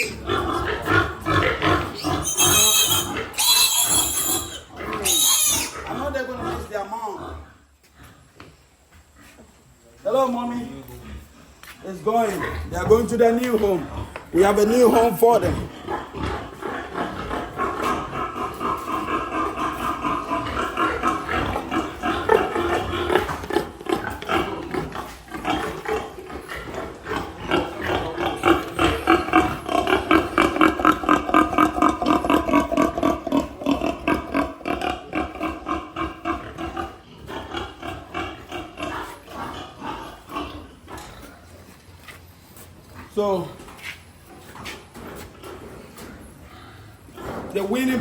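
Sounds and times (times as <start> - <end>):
piglets squealing: 0.0 - 6.0.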